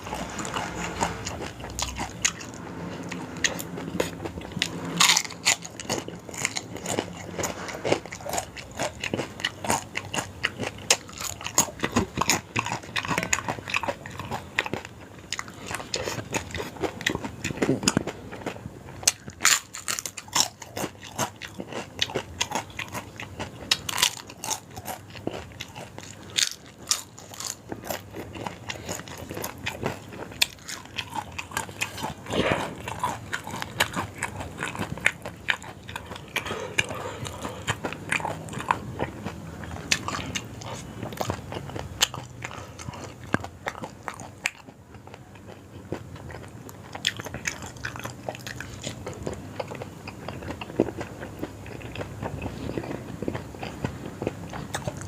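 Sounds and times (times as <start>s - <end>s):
crunchy chewing and biting: 0.0s - 55.0s.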